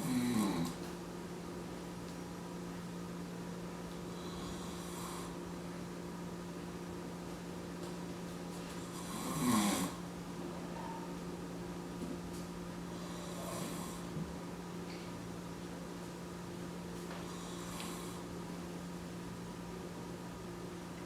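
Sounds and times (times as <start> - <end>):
man snoring: 0.0 - 0.8, 4.2 - 5.4, 9.0 - 10.0, 13.0 - 14.2.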